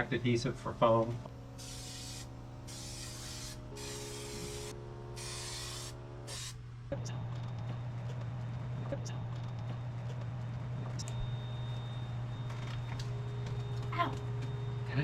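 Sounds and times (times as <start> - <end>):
aerosol can spraying: 1.6 - 6.6.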